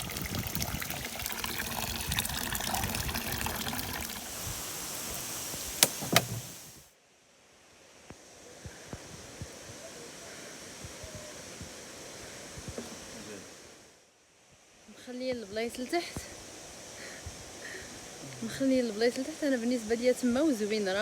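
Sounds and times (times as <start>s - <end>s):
flowing river water: 0.0s - 6.8s.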